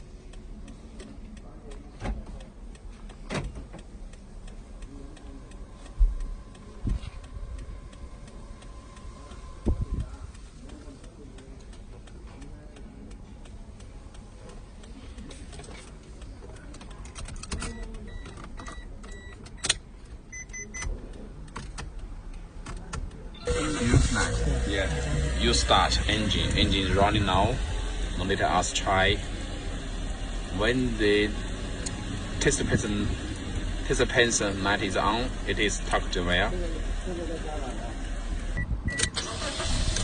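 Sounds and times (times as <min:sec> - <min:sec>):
car engine idling: 0:00.0 - 0:17.0, 0:21.0 - 0:40.0
short electronic beeps: 0:20.3 - 0:20.9.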